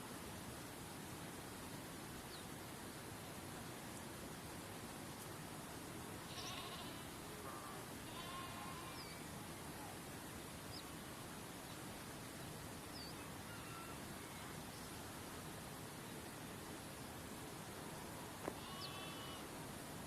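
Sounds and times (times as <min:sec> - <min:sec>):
quavering animal calls: 0:06.3 - 0:09.2, 0:13.1 - 0:14.6, 0:18.6 - 0:19.5.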